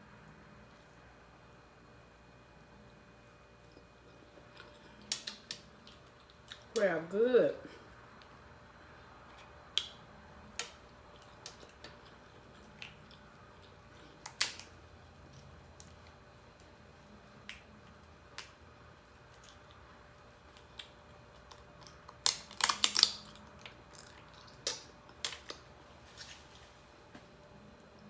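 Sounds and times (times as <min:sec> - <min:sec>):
crab shell cracking: 0:05.0 - 0:06.8, 0:14.2 - 0:14.7, 0:20.5 - 0:25.7.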